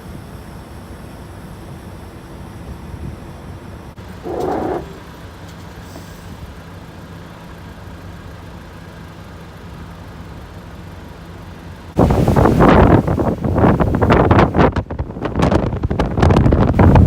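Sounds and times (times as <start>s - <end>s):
vehicle engine running: 0.6s - 12.2s.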